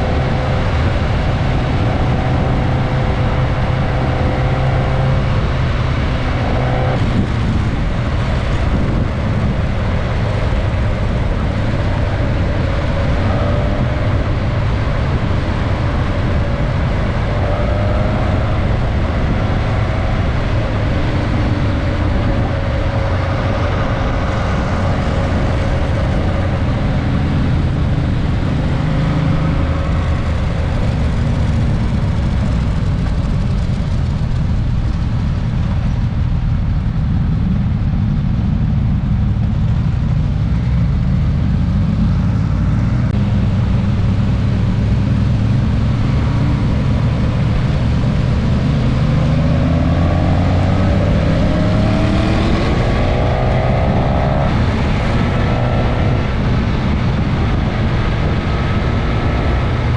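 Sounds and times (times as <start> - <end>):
motorcycle engine running: 0.0 - 59.9
wind rumble: 0.0 - 59.9.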